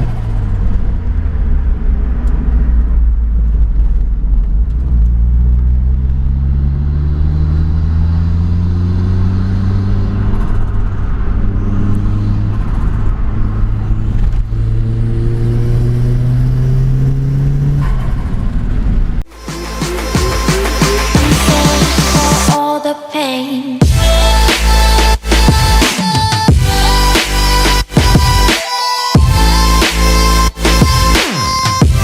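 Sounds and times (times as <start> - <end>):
turbocharged car engine accelerating: 0.0 - 22.6.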